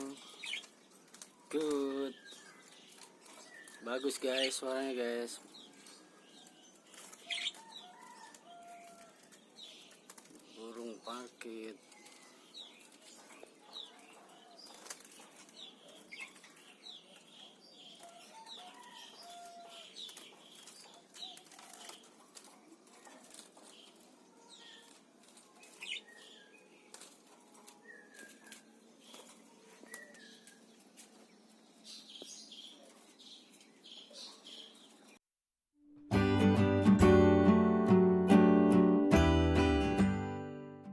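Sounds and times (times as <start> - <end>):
parakeets chirping: 0.0 - 0.7
faint clicks of birds moving: 0.0 - 35.2.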